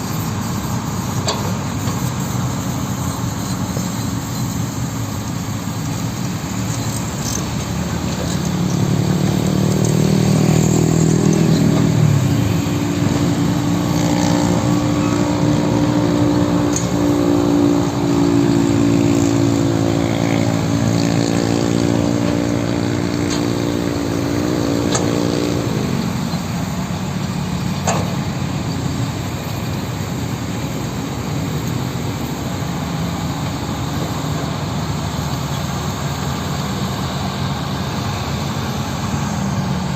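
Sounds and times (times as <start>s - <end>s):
heavy diesel engine working: 0.0s - 39.9s.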